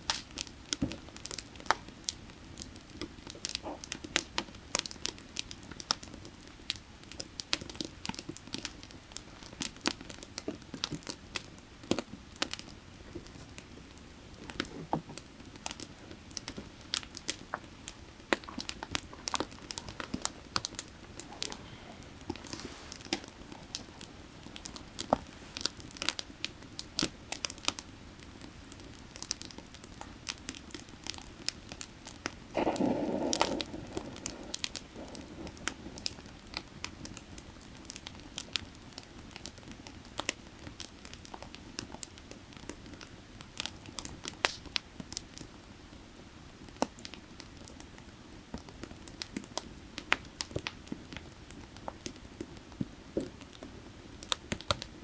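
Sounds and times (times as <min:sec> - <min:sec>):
firewood crackling and popping: 0:00.0 - 0:55.0.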